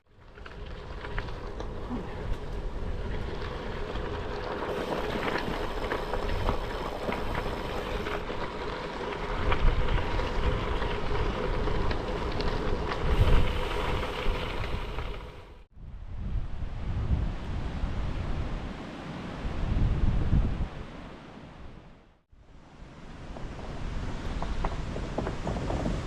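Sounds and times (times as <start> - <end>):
strong wind buffeting microphone: 9.3 - 18.8, 19.4 - 20.9.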